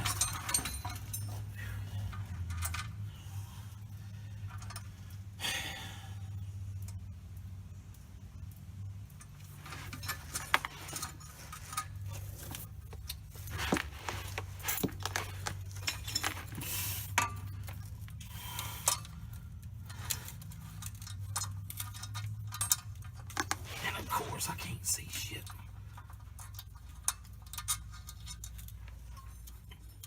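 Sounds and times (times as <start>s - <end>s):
metal clinks and knocks: 0.0s - 3.1s, 4.3s - 5.0s, 9.1s - 23.7s, 25.7s - 30.0s
steady low hum: 0.0s - 30.0s.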